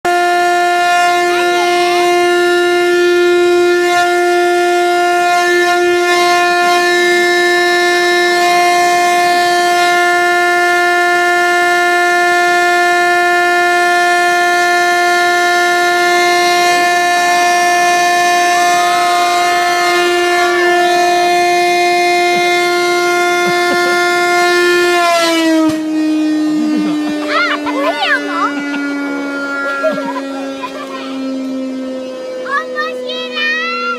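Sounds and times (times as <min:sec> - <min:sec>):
siren long steady tone: 0:00.0 - 0:33.9.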